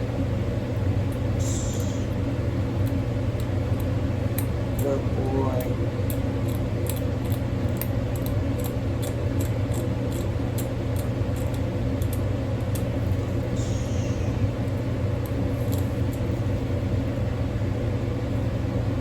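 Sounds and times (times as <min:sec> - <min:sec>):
metal scaler clicking on teeth: 0:06.1 - 0:12.9.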